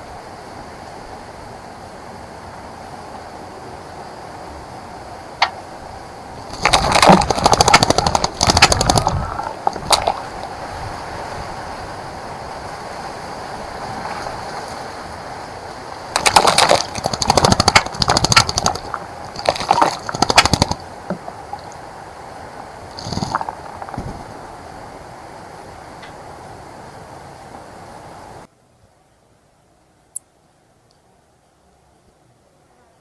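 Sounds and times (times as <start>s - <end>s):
bird wing flutters: 6.4s - 11.6s, 13.6s - 15.2s, 16.1s - 21.7s, 22.9s - 24.6s
bird splashing water: 6.4s - 24.8s.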